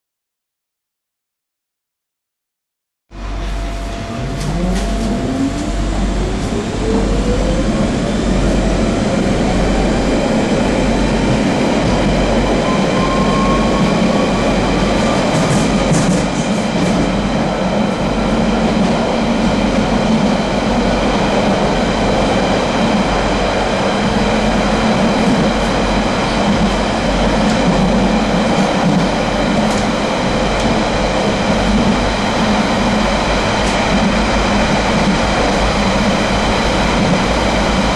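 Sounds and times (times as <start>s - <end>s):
train traction motor whine: 3.1s - 37.9s
wheels clattering on rails: 14.7s - 17.2s.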